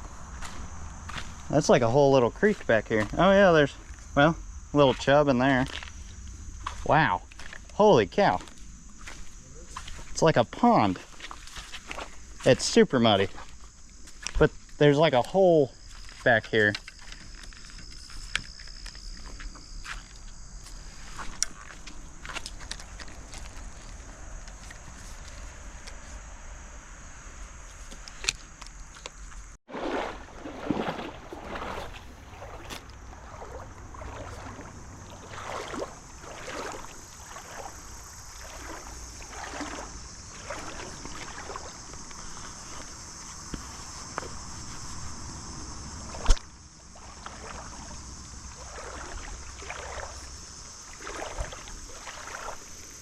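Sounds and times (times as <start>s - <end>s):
wading through shallow water: 0.0s - 25.8s, 29.6s - 53.0s.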